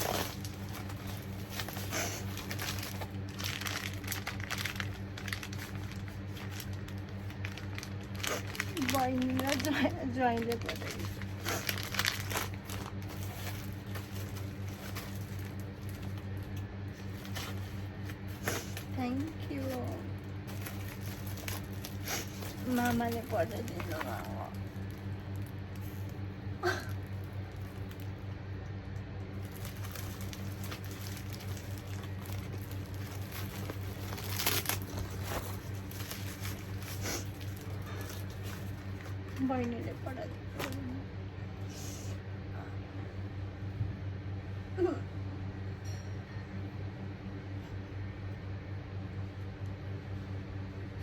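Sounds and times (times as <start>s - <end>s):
gift packaging rustling and crinkling: 0.0s - 28.3s, 29.3s - 41.0s
steady low hum: 0.0s - 51.0s.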